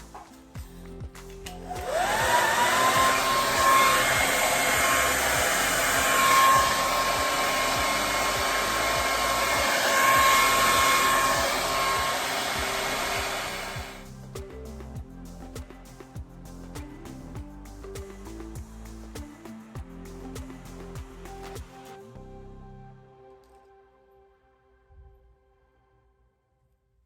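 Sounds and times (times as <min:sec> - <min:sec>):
hair dryer running: 0:01.4 - 0:14.0
hair dryer switch: 0:01.4 - 0:14.0.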